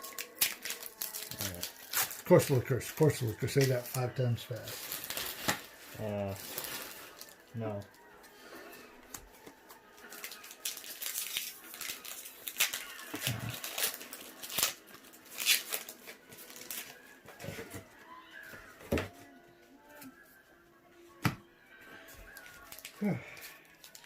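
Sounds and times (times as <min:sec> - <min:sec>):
foil wrappers crinkling: 0:00.0 - 0:17.8, 0:22.0 - 0:24.0.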